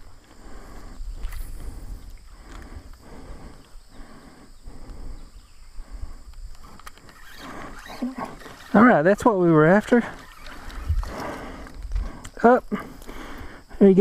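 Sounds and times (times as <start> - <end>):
spinning reel whirring: 6.7 - 11.6
wind on microphone: 10.2 - 12.3.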